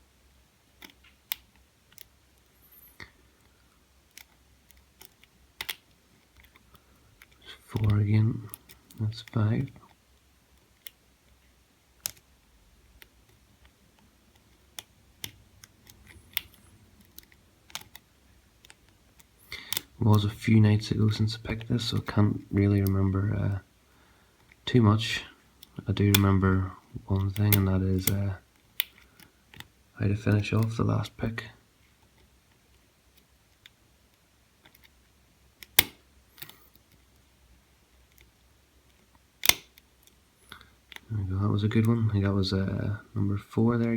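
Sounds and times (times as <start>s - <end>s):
lock picking clicks: 13.0s - 20.3s, 35.6s - 37.0s, 39.4s - 40.2s
lock pick clicking in lock: 18.6s - 20.0s, 35.6s - 36.9s, 39.4s - 39.8s.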